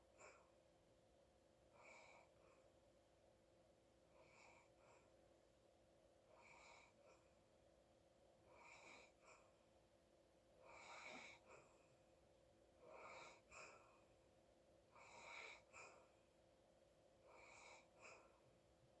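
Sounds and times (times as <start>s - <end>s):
wheezy breathing of sleeping person: 1.7s - 2.7s, 8.5s - 9.6s, 10.6s - 11.8s, 12.8s - 14.1s, 14.9s - 16.2s, 17.2s - 18.4s.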